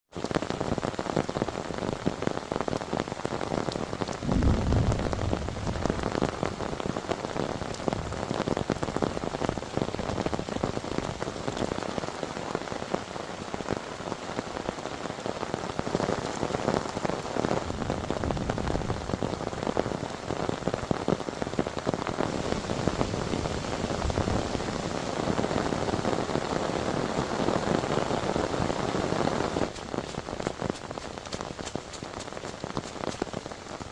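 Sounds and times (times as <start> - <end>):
heavy rain falling: 0.1 - 33.9
raindrops ticking on a surface: 0.1 - 33.9
low rumble: 4.2 - 6.4.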